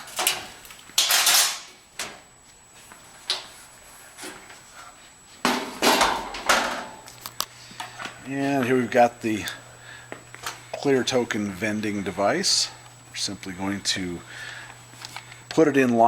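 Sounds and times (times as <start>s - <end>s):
washer metal clatter and knocks: 5.5s - 7.0s.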